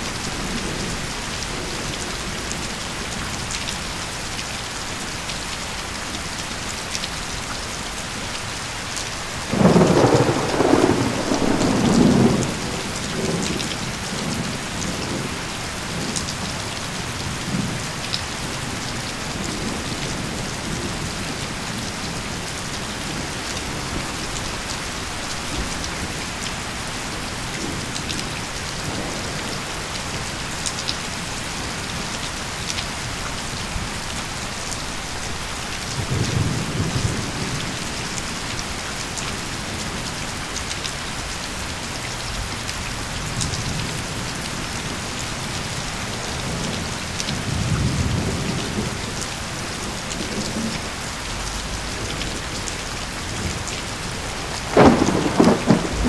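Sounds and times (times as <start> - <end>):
steady rain falling: 0.0 - 56.0
low thunder rumbling: 9.5 - 30.4, 42.3 - 56.0
raindrops ticking: 50.0 - 56.0.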